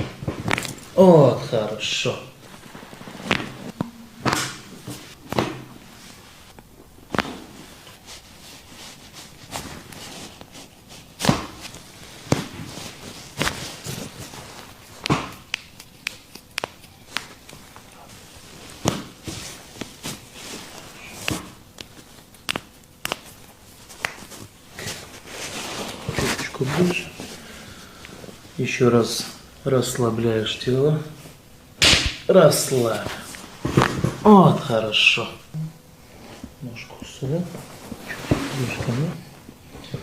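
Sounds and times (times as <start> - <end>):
clothing and table rustling: 0.0 - 31.4, 32.5 - 35.0, 35.8 - 40.0
back cracking pops: 21.2 - 23.3, 31.8 - 32.3.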